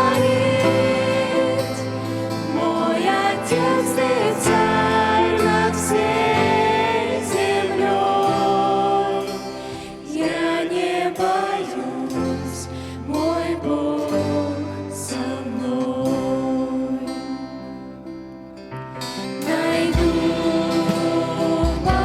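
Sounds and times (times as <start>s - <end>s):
group singing a hymn: 0.0s - 18.2s, 19.1s - 22.0s
instrumental accompaniment: 18.8s - 22.0s.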